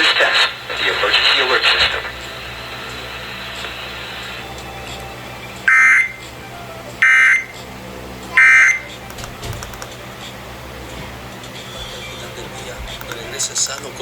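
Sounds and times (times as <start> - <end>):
shrill digital data squawks: 5.7 - 6.2, 7.0 - 7.6, 8.4 - 8.9.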